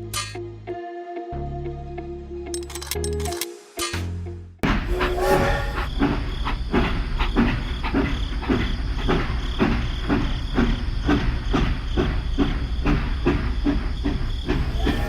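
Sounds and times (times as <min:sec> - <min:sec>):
small machine clattering: 0:02.6 - 0:03.5.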